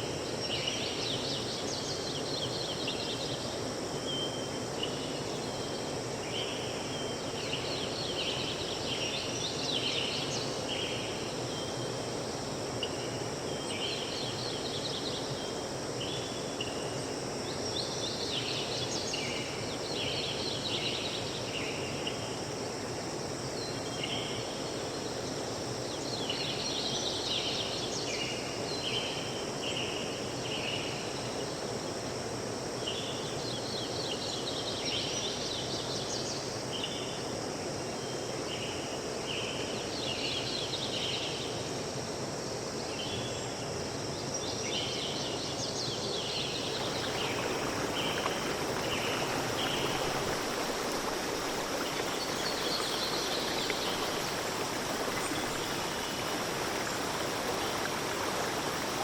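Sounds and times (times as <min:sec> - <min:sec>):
wind: 0:00.0 - 0:59.0
small birds chirping: 0:46.0 - 0:59.0
rushing water: 0:46.4 - 0:59.0.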